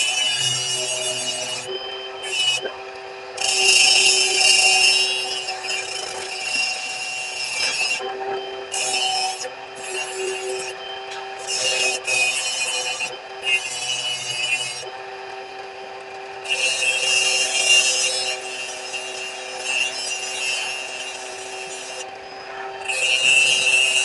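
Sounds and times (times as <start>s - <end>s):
steel grinding hiss: 0.0s - 2.6s, 3.4s - 8.0s, 16.4s - 24.0s
electric grinder humming: 0.0s - 24.0s.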